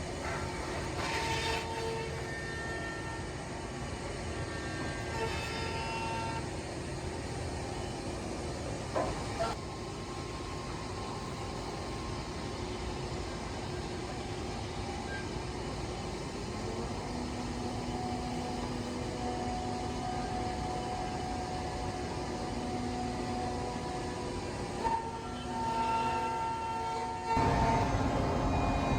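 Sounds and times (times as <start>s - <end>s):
faint whining motor tones: 0.0s - 28.9s.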